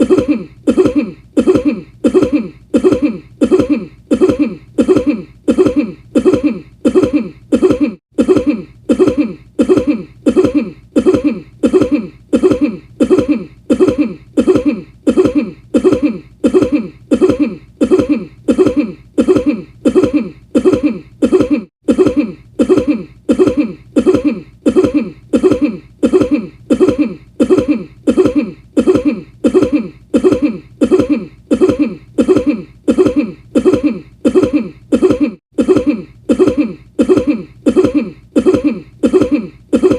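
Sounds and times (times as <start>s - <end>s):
man coughing: 0.0s - 39.9s.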